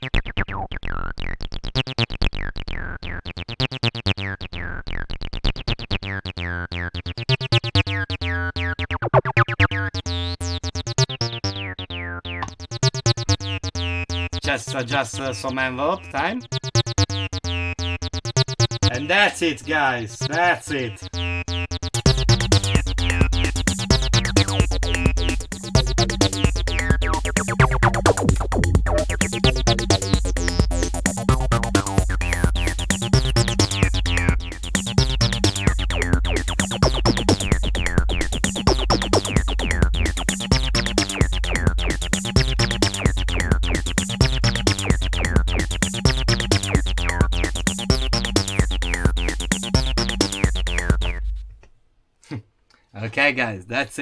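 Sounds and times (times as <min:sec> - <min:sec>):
squelching acid bassline: 0:00.0 - 0:51.6
drum machine kick: 0:21.9 - 0:51.6.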